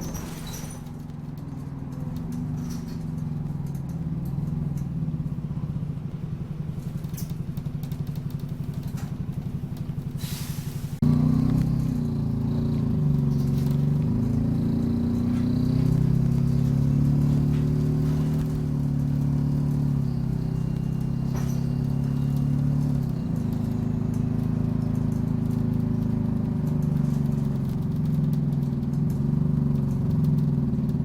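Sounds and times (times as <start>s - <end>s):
bus diesel engine: 0.0s - 31.0s
short air hiss: 10.2s - 11.0s.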